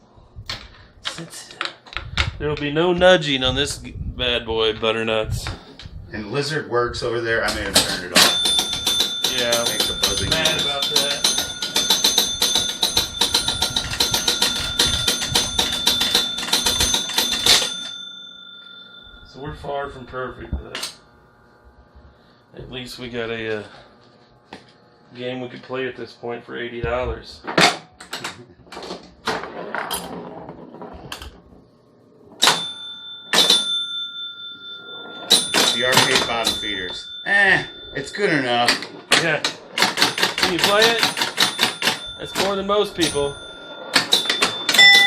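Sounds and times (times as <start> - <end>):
steady electrical buzz: 0.0 - 45.0
pinball bell rings: 7.5 - 21.0, 32.4 - 45.0
pinball relay clicks: 7.7 - 18.3, 32.4 - 34.2, 35.3 - 37.8, 38.6 - 45.0.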